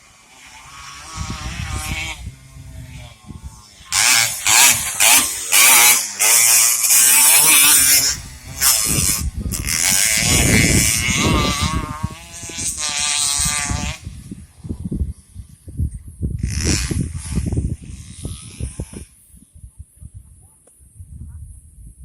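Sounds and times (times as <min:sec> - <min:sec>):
racing motorcycle engines revving: 0:00.0 - 0:15.6.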